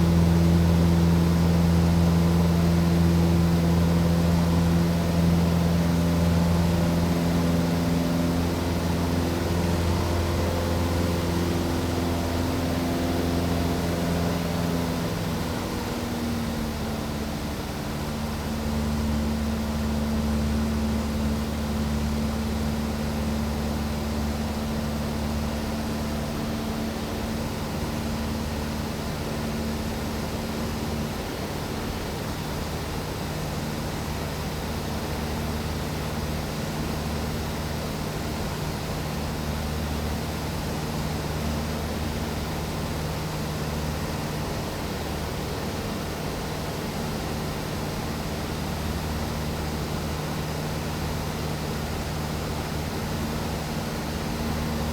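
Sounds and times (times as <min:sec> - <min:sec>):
aircraft engine drone: 0:00.0 - 0:54.9.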